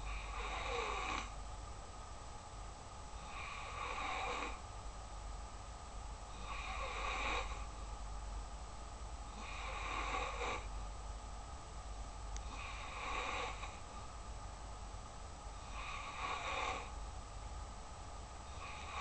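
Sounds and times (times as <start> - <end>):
snoring: 0.0 - 1.3, 3.2 - 4.6, 6.3 - 7.7, 9.3 - 10.7, 12.4 - 13.8, 15.6 - 16.9, 18.5 - 19.0.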